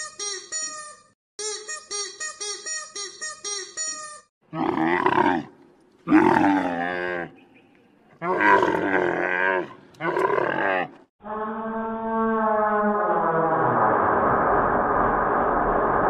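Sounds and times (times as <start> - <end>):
animal chirps: 0.0 - 4.2.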